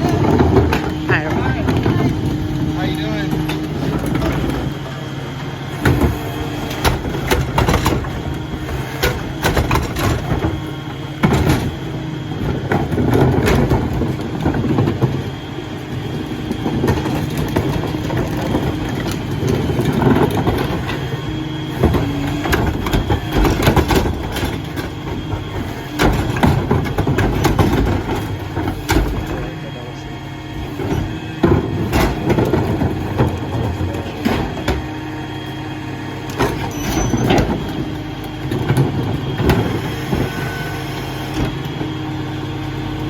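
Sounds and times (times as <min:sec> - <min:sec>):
garbage truck engine and machinery: 0:00.0 - 0:43.0
clanks and bangs: 0:21.8 - 0:29.6, 0:30.6 - 0:34.9.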